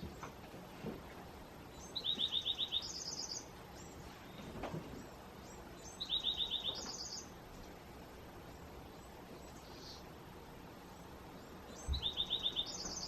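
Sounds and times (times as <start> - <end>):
songbird singing: 0.0 - 13.0.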